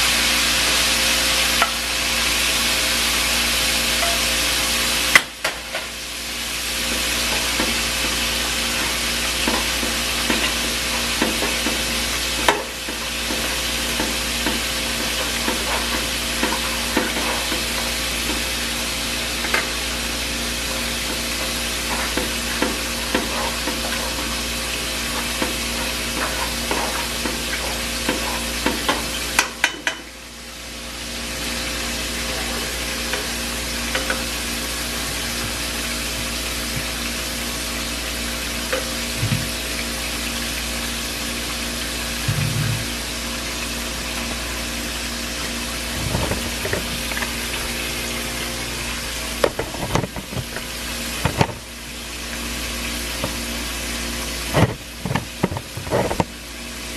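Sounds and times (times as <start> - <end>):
chicken frying in a pan: 0.0 - 56.9.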